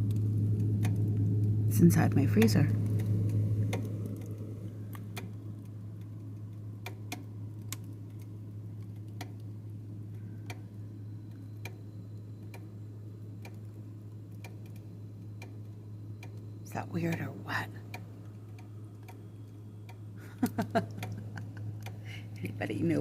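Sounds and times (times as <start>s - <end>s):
freezer ticking clicks: 0.0s - 23.0s
refrigerator low hum: 0.0s - 23.0s.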